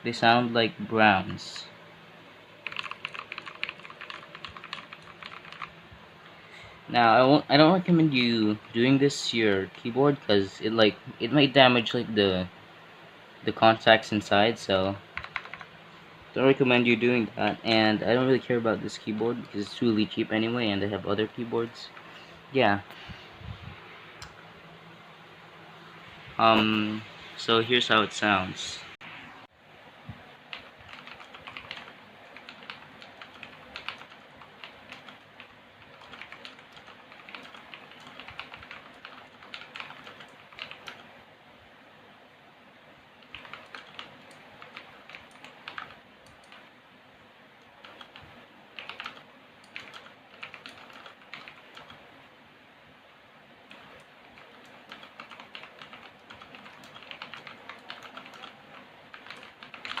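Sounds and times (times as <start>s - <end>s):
typing on mechanical keyboard: 2.6s - 5.7s, 15.2s - 15.7s, 30.5s - 41.1s, 43.2s - 46.6s, 47.8s - 48.2s, 48.8s - 52.0s, 53.7s - 60.0s.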